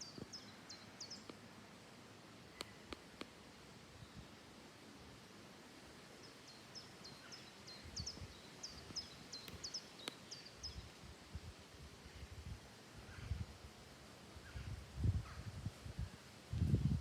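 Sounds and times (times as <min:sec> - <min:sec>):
small bird chirping: 0:02.5 - 0:03.0, 0:06.2 - 0:10.9.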